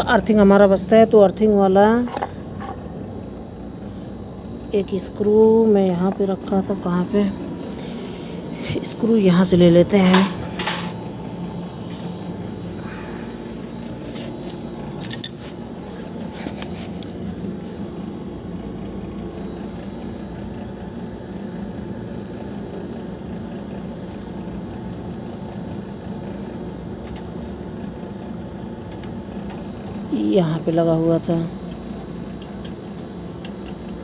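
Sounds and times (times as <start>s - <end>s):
steady low hum: 0.0s - 34.0s
screwdriver and screw clicking: 15.0s - 15.6s.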